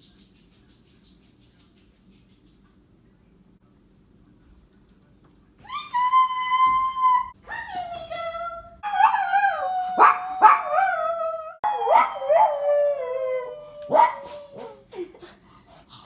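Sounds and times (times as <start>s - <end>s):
dog yelping: 8.8s - 11.2s
dog howling: 8.8s - 14.9s.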